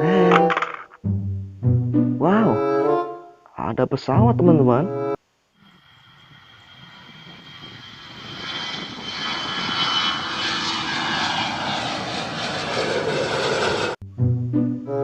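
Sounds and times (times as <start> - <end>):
airplane engine: 5.6 - 14.0.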